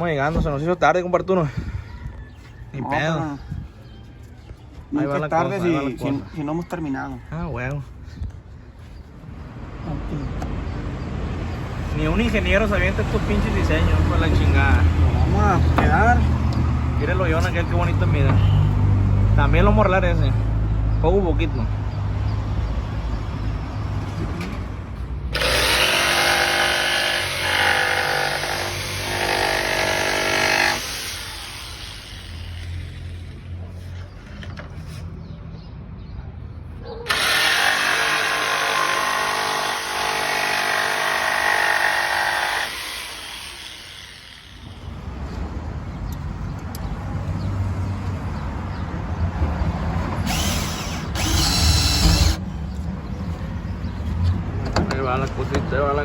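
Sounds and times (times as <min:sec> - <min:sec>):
power tool cutting wood: 0:25.3 - 0:33.6, 0:37.1 - 0:44.9, 0:50.2 - 0:52.4.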